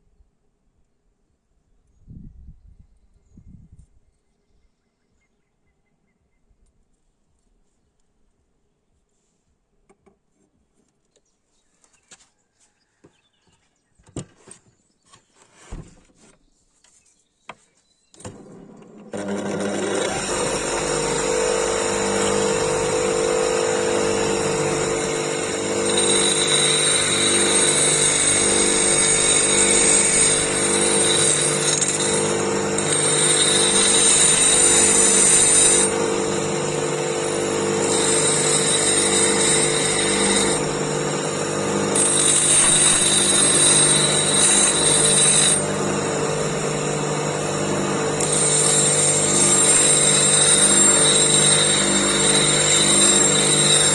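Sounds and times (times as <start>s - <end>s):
power tool motor running: 18.2s - 53.9s.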